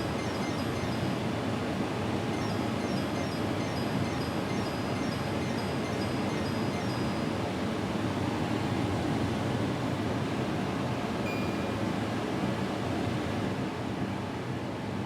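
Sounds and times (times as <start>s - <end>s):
air conditioner fan blowing: 0.0s - 15.0s.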